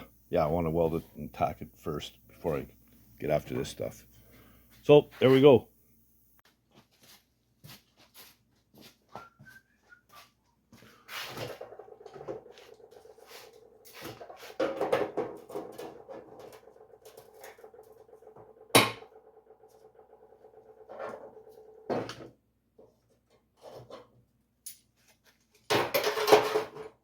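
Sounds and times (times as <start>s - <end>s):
steady hum: 0.0s - 6.4s.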